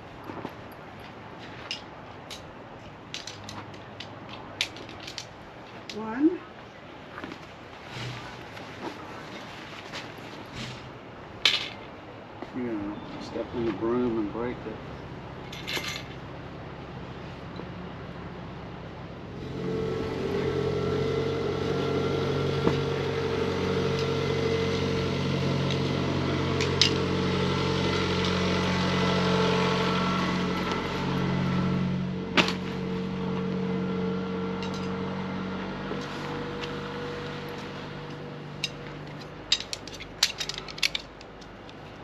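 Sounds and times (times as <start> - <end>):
vehicle engine running: 16.2 - 40.1.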